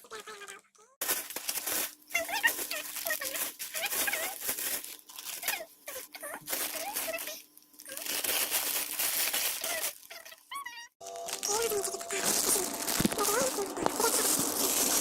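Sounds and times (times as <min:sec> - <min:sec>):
plastic bag crinkling: 0:00.0 - 0:15.0.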